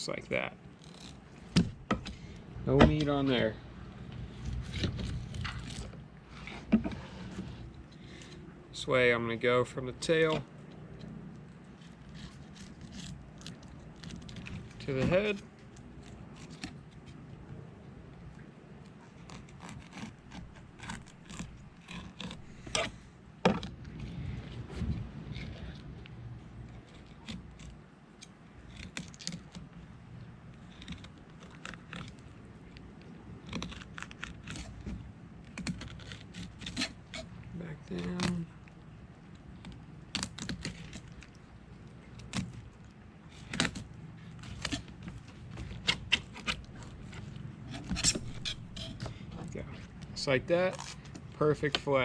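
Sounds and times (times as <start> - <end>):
knife scraping fish backbone: 4.2 - 8.5, 10.2 - 17.3, 18.8 - 38.6, 39.3 - 50.0
knife cutting fish: 19.0 - 23.0, 33.4 - 37.5, 43.4 - 49.2.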